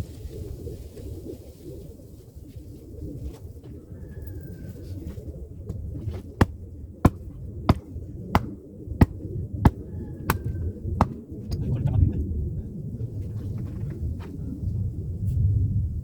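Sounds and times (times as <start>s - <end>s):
axe striking a log: 5.7s - 11.2s.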